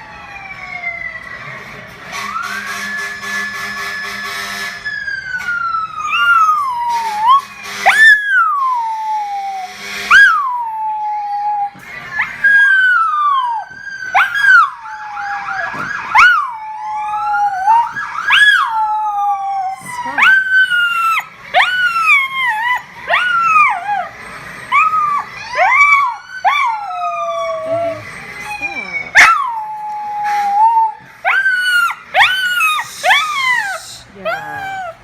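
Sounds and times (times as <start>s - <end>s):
emergency vehicle sirens: 0.0s - 35.0s
dog howling: 14.2s - 24.1s, 24.7s - 35.0s.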